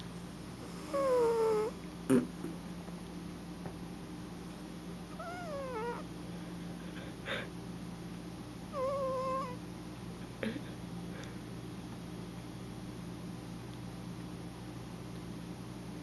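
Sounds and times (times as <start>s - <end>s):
cat squeaky cries: 5.2s - 6.0s, 8.8s - 9.6s.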